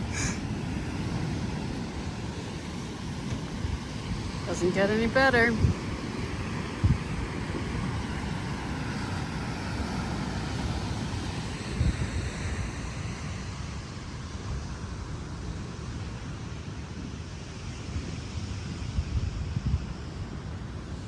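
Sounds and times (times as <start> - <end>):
wind buffeting microphone: 0.0 - 15.8
ocean surf washing on beach: 0.0 - 21.0.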